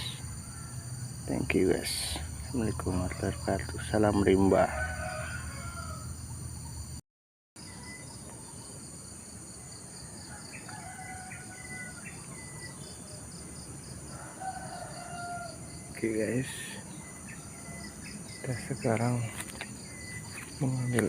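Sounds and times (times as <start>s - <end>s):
rooster crowing: 0.0s - 1.1s, 3.0s - 6.2s, 10.2s - 12.6s, 14.1s - 16.0s
high-pitched insect chorus: 0.0s - 7.0s, 7.6s - 21.0s.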